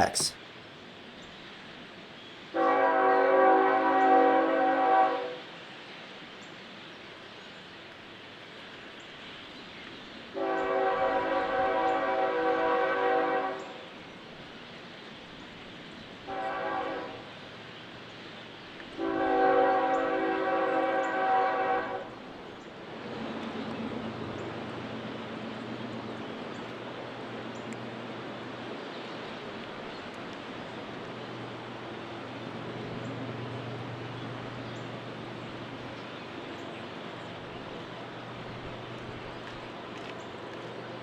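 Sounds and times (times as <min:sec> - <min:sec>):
steady background hiss: 0:00.0 - 0:02.6
locomotive air horn blasts: 0:02.6 - 0:05.4, 0:10.4 - 0:13.7, 0:16.3 - 0:17.2, 0:19.0 - 0:22.1.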